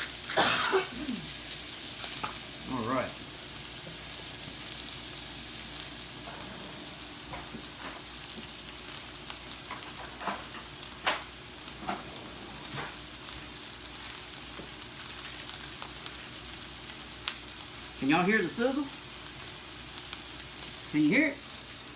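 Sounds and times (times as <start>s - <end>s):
steaks sizzling in a skillet: 0.0s - 21.9s.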